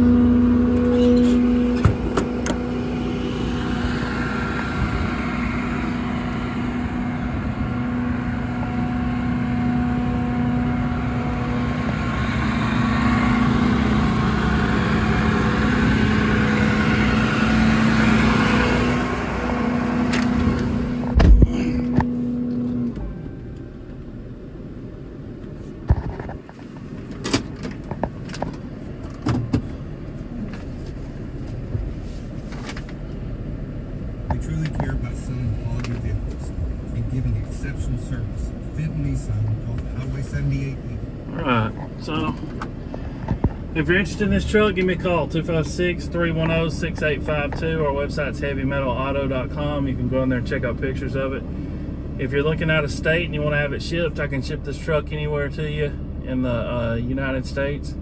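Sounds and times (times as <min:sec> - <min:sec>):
diesel engine running: 0:00.0 - 0:58.0
sharp thump: 0:21.1 - 0:22.2.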